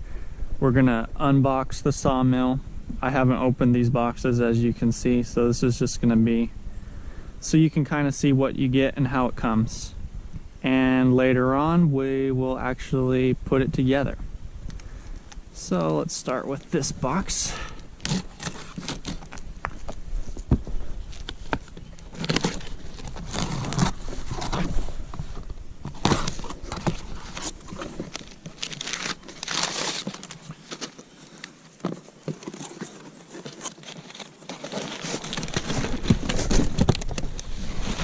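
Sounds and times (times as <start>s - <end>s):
cardboard rustling and crinkling: 15.7s - 38.0s.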